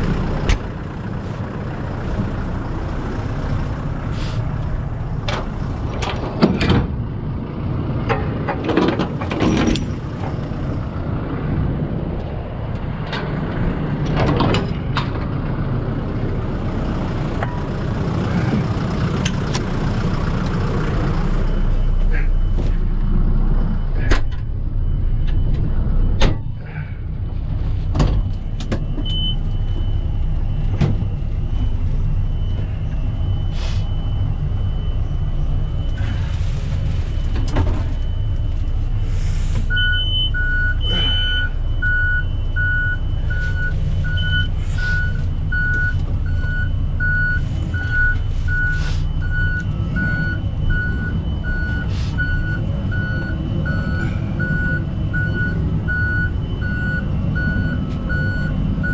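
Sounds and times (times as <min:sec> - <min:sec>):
diesel engine running: 0:00.0 - 0:58.9
backup alarm beeping: 0:20.8 - 0:58.9.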